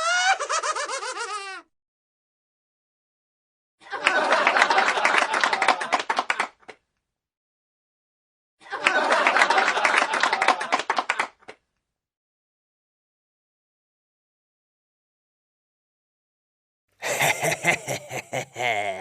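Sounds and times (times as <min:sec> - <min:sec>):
audience laughter: 0:03.9 - 0:06.4, 0:08.6 - 0:11.3, 0:17.0 - 0:19.0
audience clapping: 0:04.0 - 0:06.8, 0:08.8 - 0:11.6.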